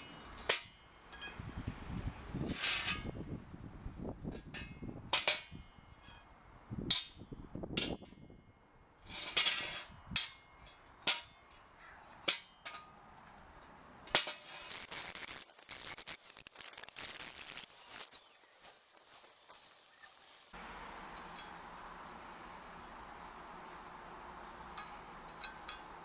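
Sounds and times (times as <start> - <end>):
steel parts clanking: 9.0 - 20.6
steady hiss: 14.6 - 21.3.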